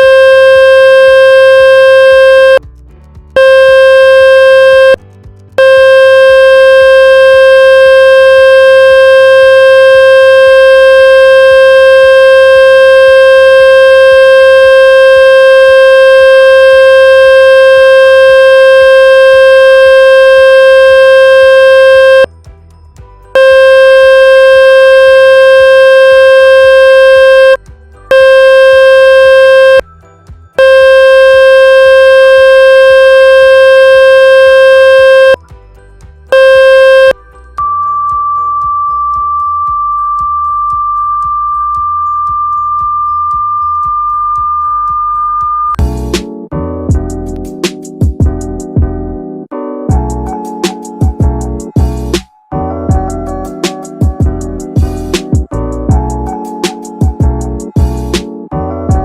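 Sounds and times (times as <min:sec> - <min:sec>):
high electronic buzz tone: 0:00.0 - 0:02.6, 0:03.4 - 0:05.0, 0:05.6 - 0:22.3, 0:23.4 - 0:29.8, 0:30.6 - 0:35.4, 0:36.4 - 0:37.2.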